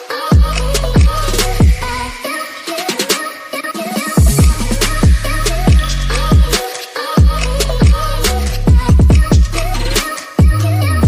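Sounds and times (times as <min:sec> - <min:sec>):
electronic music: 0:00.0 - 0:11.0
deep kick drums: 0:00.4 - 0:01.8, 0:04.2 - 0:06.6, 0:07.2 - 0:09.6, 0:10.4 - 0:10.6
heavy bass: 0:00.4 - 0:02.2, 0:04.2 - 0:06.6, 0:07.2 - 0:11.0.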